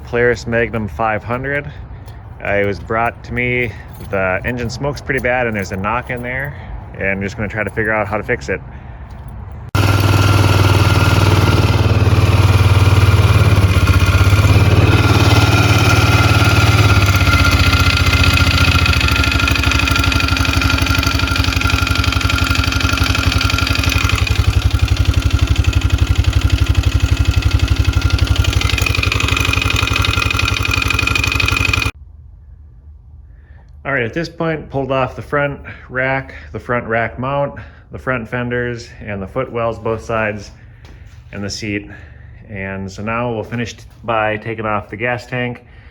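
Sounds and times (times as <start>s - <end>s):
atv engine running: 0.0s - 8.3s, 9.0s - 32.0s.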